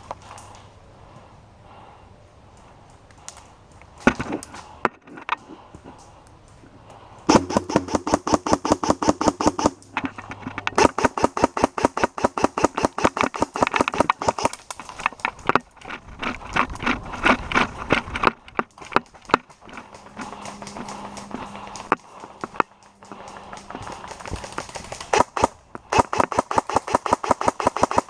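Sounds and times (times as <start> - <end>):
airsoft rifle automatic bursts: 7.3 - 9.8, 10.8 - 14.6, 23.8 - 28.0.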